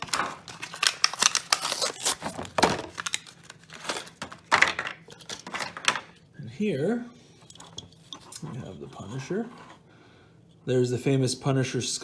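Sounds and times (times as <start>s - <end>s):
plastic packaging tearing and crinkling: 0.0s - 4.5s.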